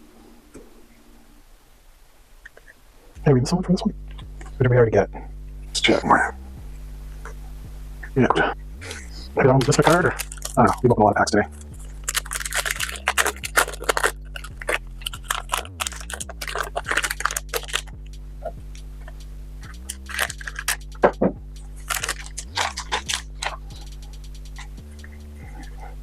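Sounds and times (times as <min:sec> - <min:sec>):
trading cards crinkling and snapping: 0:09.6 - 0:10.9, 0:11.5 - 0:18.2, 0:19.0 - 0:25.9.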